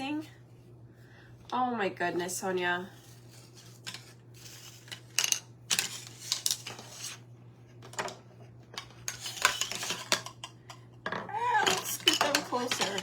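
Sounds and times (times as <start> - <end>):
steady low hum: 0.0 - 13.0
small hard pieces clacking together: 11.6 - 13.0.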